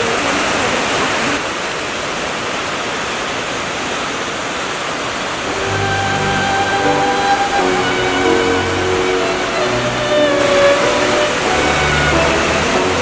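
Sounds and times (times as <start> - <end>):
waterfall rushing: 0.0 - 13.0
music with long held notes: 5.4 - 13.0.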